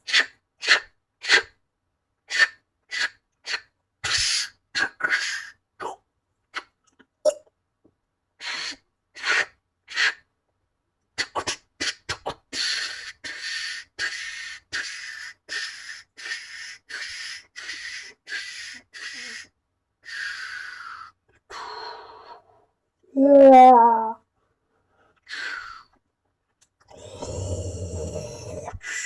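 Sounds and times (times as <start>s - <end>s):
sniff-like bursts: 8.4s - 10.2s, 24.8s - 26.0s
long exhalations: 18.1s - 22.7s, 26.9s - 29.0s.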